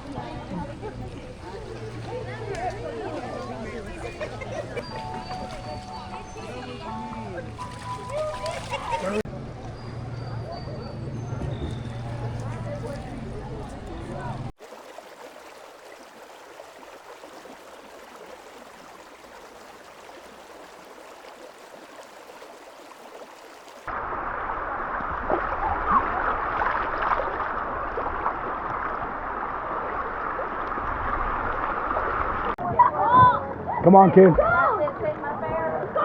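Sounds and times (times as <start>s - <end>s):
river water rushing: 0.0s - 10.1s, 11.8s - 32.6s.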